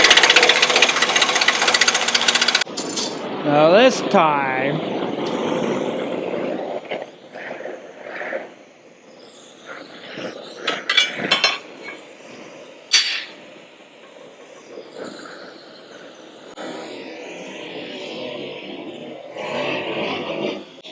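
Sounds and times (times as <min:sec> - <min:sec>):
metal tools clinking and scraping: 0:02.7 - 0:03.2, 0:10.7 - 0:12.0, 0:12.9 - 0:13.4.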